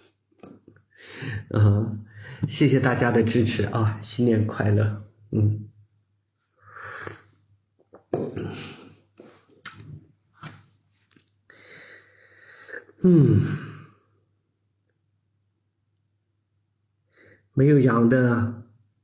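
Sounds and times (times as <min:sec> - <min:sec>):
man's breathy vocal bursts: 0:06.6 - 0:07.2
mouth clicks: 0:06.7 - 0:08.6, 0:09.6 - 0:10.0
man's voiced sound falling in pitch: 0:13.0 - 0:13.8.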